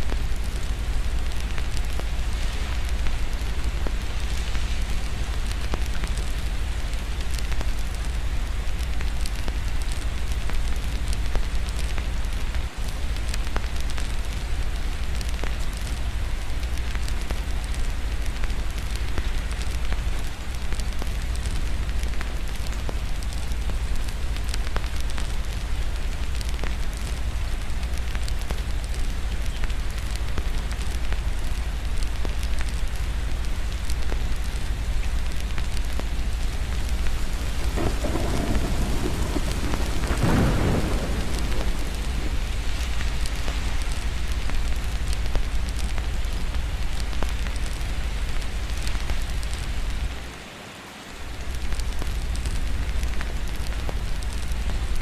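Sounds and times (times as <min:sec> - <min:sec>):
constant low rumble: 0:00.0 - 0:50.5, 0:51.1 - 0:55.0
steady rain falling: 0:00.0 - 0:55.0
distant thunder: 0:36.7 - 0:44.4.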